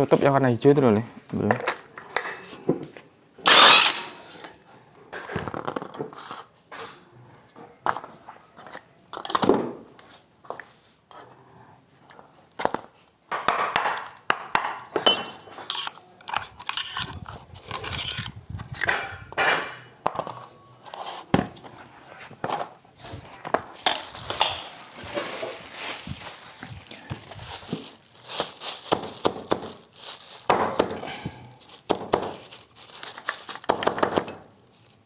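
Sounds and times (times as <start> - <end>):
metal tools clinking: 15.0 - 20.5, 23.7 - 29.0.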